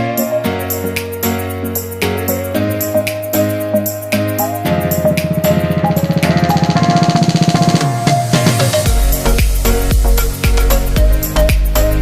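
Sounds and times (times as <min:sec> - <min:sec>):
music with driving drum beat: 0:03.0 - 0:12.0.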